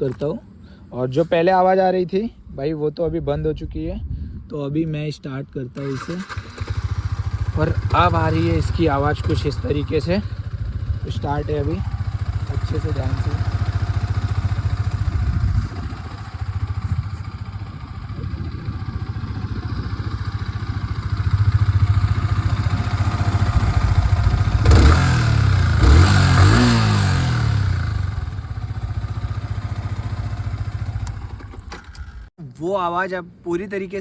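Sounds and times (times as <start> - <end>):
motorcycle engine idling and revving: 5.9 - 32.3.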